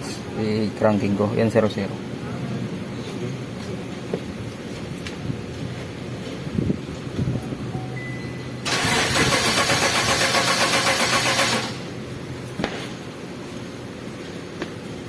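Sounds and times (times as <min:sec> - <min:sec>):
car engine cranking: 0:08.6 - 0:11.9.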